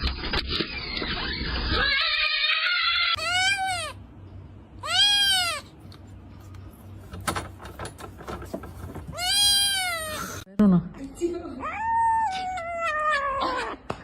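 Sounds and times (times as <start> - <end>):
cat meowing: 1.7 - 4.0, 4.8 - 5.7, 9.1 - 10.4, 11.6 - 13.9.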